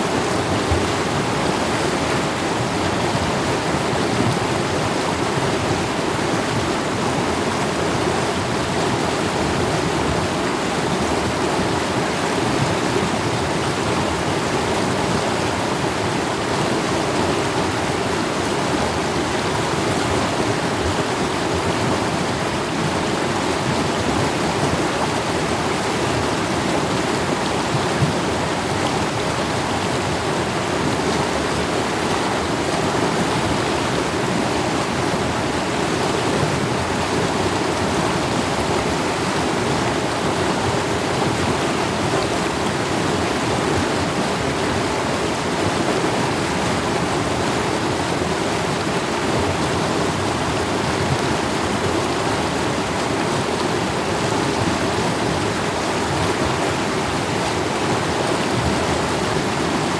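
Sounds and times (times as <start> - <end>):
water rushing over rocks: 0.0 - 59.9.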